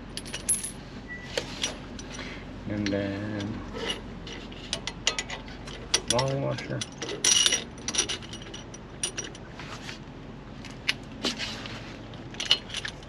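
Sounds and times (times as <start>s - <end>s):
metal washers clinking: 0.1s - 0.8s, 2.8s - 9.4s, 12.3s - 13.0s.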